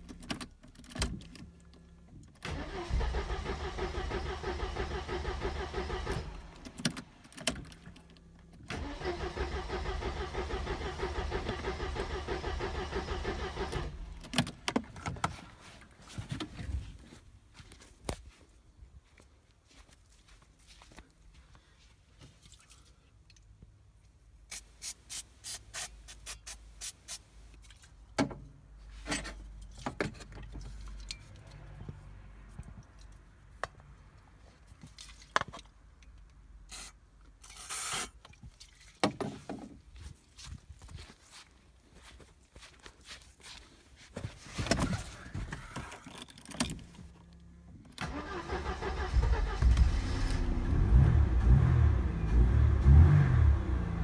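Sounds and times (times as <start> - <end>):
engine cranking: 2.4 - 6.9, 8.7 - 14.4, 48.0 - 51.6.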